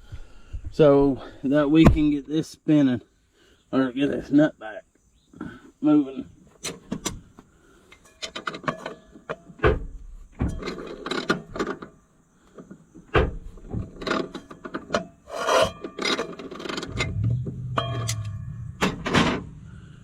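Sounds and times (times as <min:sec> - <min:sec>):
hand tools clanking on metal: 0:07.9 - 0:09.5, 0:10.4 - 0:12.0, 0:13.7 - 0:19.5.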